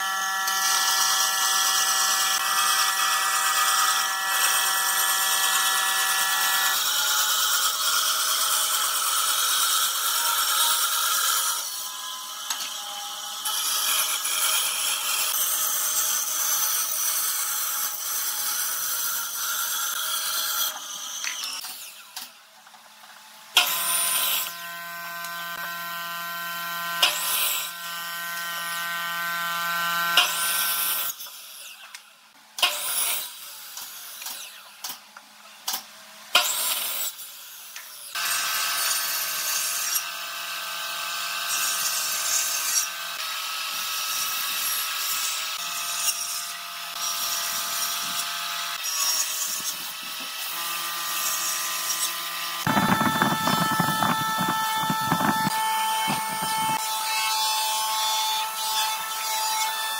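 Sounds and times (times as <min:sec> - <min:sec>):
power tool motor whining: 0:47.8 - 0:58.0
sharp knocks and clicks: 0:52.7 - 0:56.8.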